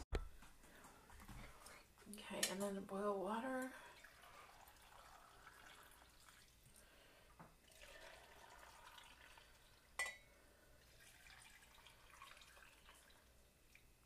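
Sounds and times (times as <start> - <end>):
hot water trickling into jars: 1.6 - 14.0
glass clink: 10.0 - 10.3.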